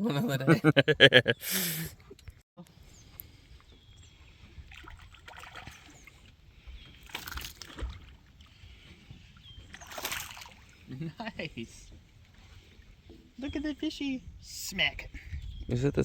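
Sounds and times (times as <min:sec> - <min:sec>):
water splashing and sloshing: 0:03.4 - 0:11.0, 0:11.6 - 0:13.4.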